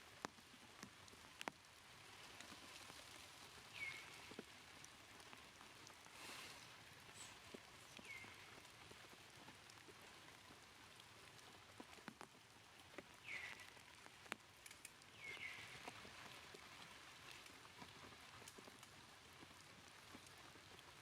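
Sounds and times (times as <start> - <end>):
light ticks: 0.1 - 21.0
faint hiss: 6.1 - 8.6.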